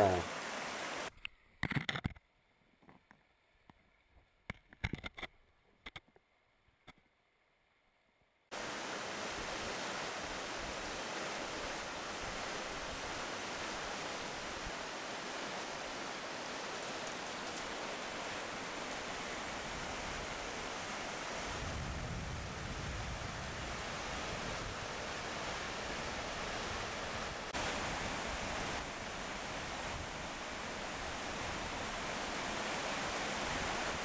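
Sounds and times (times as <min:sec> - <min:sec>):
stream water rushing: 0:00.0 - 0:01.1, 0:08.5 - 0:34.0.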